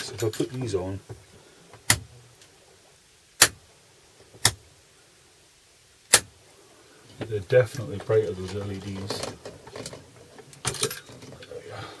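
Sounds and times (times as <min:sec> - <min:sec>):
light switch clicks: 0:03.4 - 0:03.6, 0:06.1 - 0:06.3.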